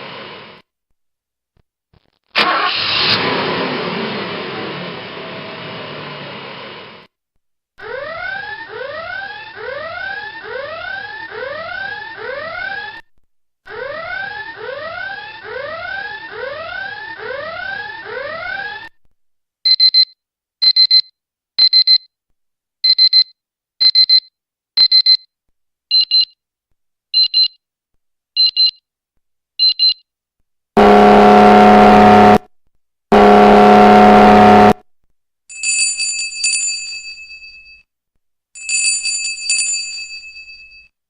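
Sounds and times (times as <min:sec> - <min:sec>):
rising whooping alarm tone: 0:07.8 - 0:13.0, 0:13.7 - 0:18.9, 0:30.8 - 0:32.4, 0:33.2 - 0:34.8
loud buzzer blasts: 0:30.8 - 0:32.5, 0:33.1 - 0:34.8.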